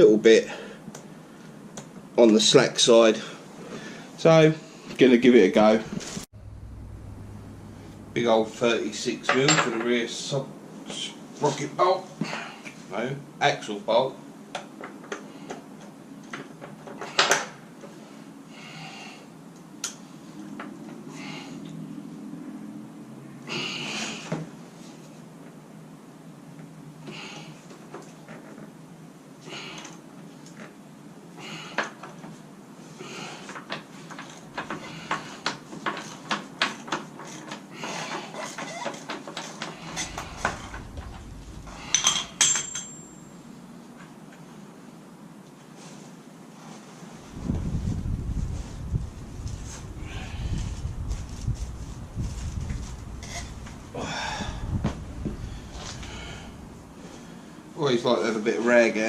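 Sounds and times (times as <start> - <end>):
metal tools clanking: 9.2 - 9.9, 39.7 - 43.4
tool rattle: 38.6 - 43.3.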